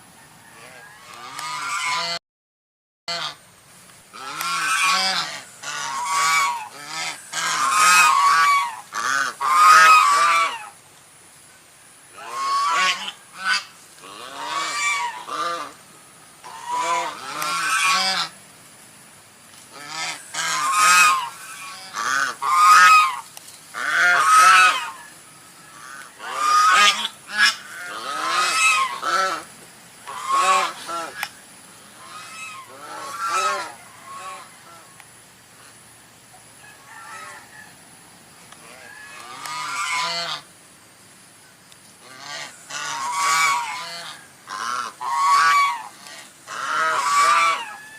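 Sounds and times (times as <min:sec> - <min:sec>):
goose honking: 0:00.6 - 0:02.2, 0:03.1 - 0:03.4, 0:04.1 - 0:10.8, 0:12.2 - 0:15.8, 0:16.4 - 0:18.4, 0:19.7 - 0:31.3, 0:31.9 - 0:34.9, 0:38.6 - 0:40.5, 0:42.0 - 0:47.9.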